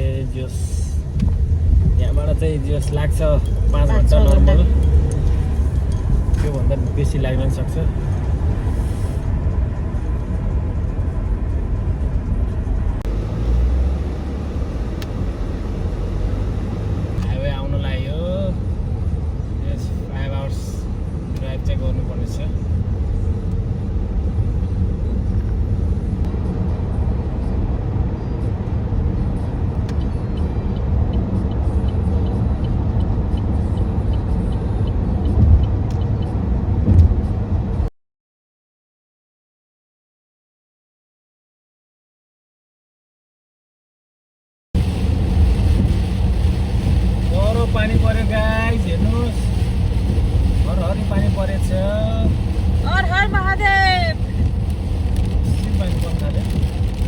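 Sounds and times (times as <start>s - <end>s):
car road and engine rumble: 0.0s - 37.9s, 44.8s - 57.0s
car bumps: 36.8s - 37.3s.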